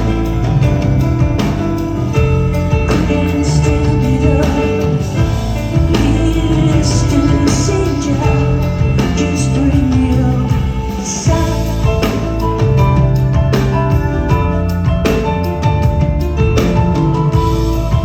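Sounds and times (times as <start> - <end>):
live band music: 0.0 - 18.0
woman singing: 2.7 - 15.2.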